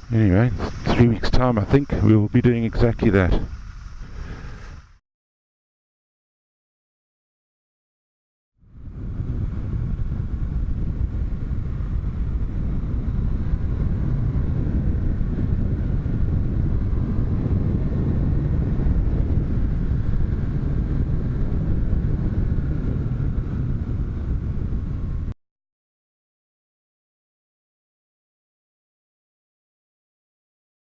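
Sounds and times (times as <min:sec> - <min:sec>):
motorcycle engine rumbling: 0:00.0 - 0:05.0, 0:08.6 - 0:25.3.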